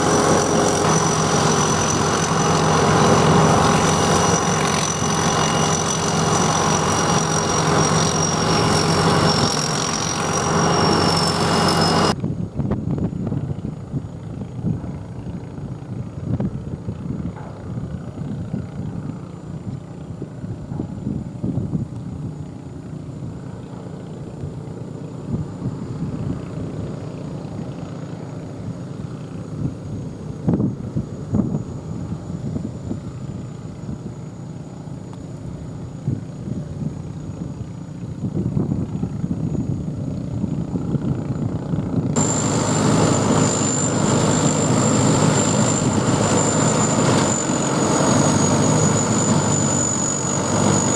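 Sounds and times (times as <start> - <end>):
combine harvester engine running: 0.0 - 12.2, 41.0 - 50.9
high whine: 0.0 - 12.2, 42.1 - 50.9.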